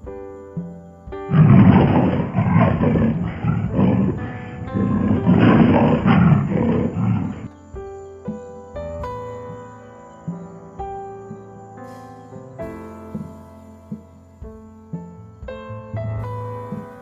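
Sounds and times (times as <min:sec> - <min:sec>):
soft piano music: 0:00.0 - 0:17.0
lion roaring: 0:01.3 - 0:07.5.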